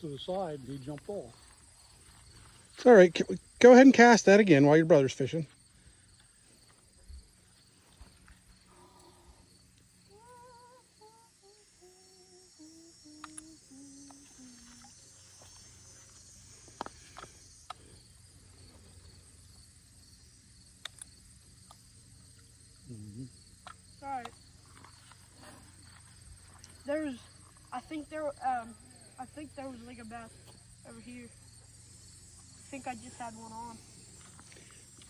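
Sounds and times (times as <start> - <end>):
insects chirring: 0.0 - 35.0
person humming: 10.0 - 15.2, 22.8 - 23.4
light clicks: 20.8 - 21.8.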